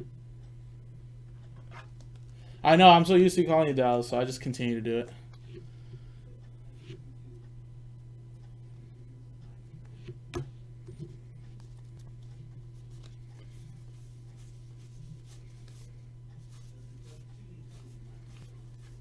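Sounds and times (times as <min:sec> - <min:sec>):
steady low hum: 0:00.0 - 0:19.0
trading cards rubbing and rustling: 0:10.8 - 0:19.0.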